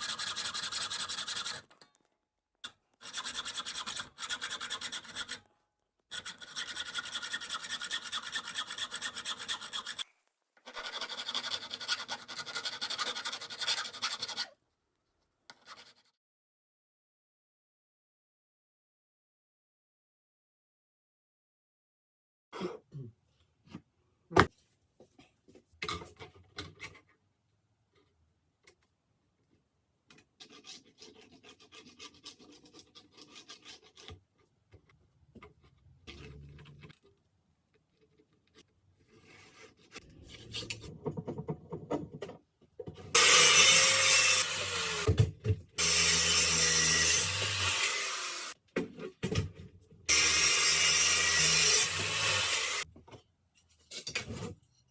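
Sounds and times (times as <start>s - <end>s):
rasping and rubbing on wood: 0.0s - 1.7s, 3.0s - 5.5s, 6.1s - 10.0s, 10.6s - 14.6s, 30.4s - 34.2s
power tool cutting wood: 43.2s - 45.2s, 45.8s - 48.6s, 50.1s - 52.9s.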